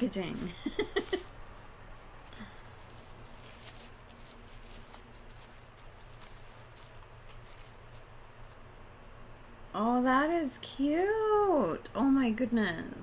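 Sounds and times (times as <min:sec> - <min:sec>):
low steady hum: 0:00.0 - 0:13.0
packaging rustling and crinkling: 0:00.8 - 0:08.7.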